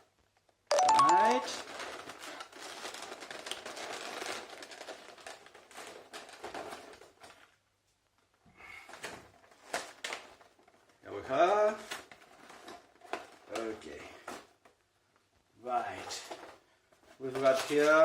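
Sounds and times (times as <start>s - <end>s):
paper and packaging rustling: 0.8s - 7.6s, 8.8s - 14.8s, 15.8s - 18.0s.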